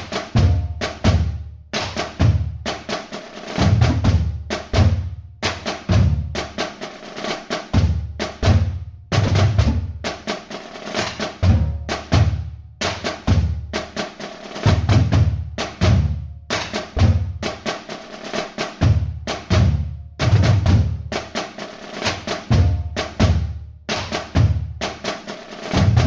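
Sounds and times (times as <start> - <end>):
bass drum thumps: 0.0 - 2.6, 3.6 - 5.2, 7.7 - 10.1, 11.4 - 13.8, 14.6 - 17.5, 18.8 - 21.1, 22.4 - 24.8, 25.7 - 26.0
snare drum hits and rolls: 0.0 - 26.0.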